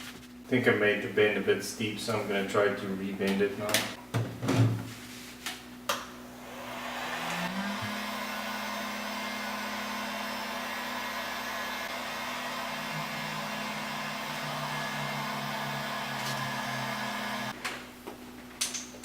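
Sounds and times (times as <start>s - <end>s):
heat gun blowing air: 6.2s - 17.6s.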